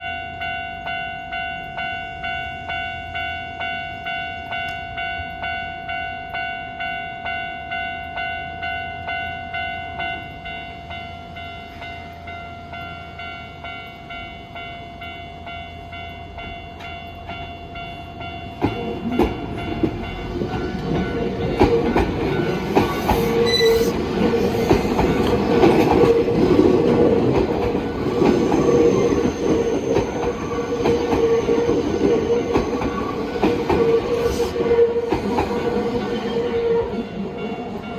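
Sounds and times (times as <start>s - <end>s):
level crossing warning bell ringing: 0.0s - 37.9s
train wheel rumble: 16.0s - 37.9s
wheels clacking over rail joints: 18.5s - 37.9s.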